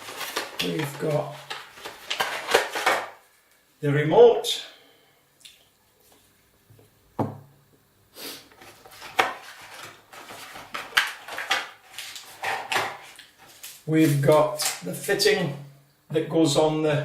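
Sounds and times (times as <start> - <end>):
packaging clicks and rustles: 0.0 - 3.2, 8.6 - 13.8
knock: 7.2 - 7.5.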